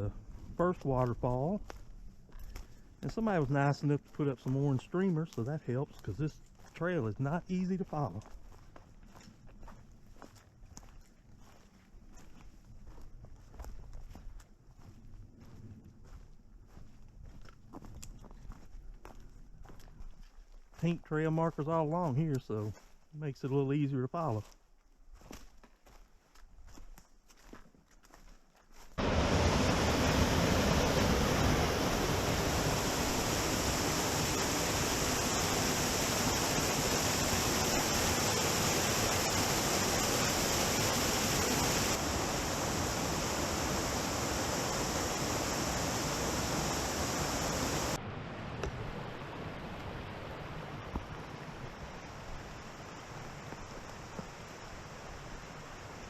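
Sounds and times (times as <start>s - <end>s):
waterfall rushing: 29.0s - 48.0s.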